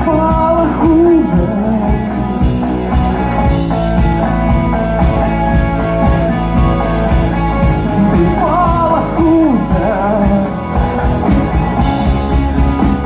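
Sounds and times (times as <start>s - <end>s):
instrumental rock music: 0.0s - 13.0s.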